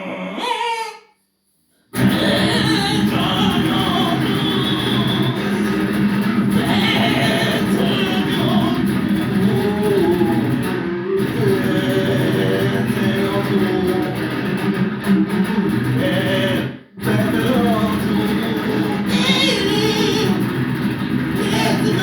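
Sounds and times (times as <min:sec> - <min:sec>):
band playing thrash metal: 0:02.0 - 0:22.0.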